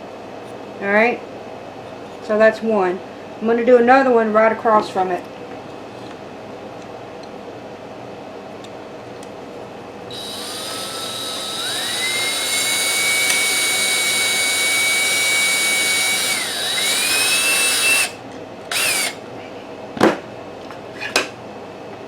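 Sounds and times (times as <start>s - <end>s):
electric drill boring wood: 10.1s - 19.2s.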